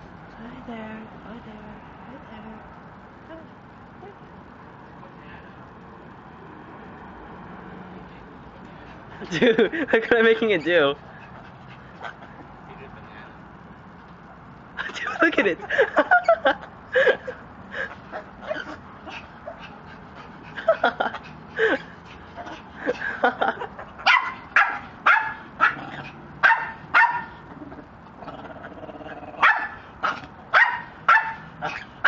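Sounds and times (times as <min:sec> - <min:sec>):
dog barking: 0:24.0 - 0:27.4, 0:29.4 - 0:31.9.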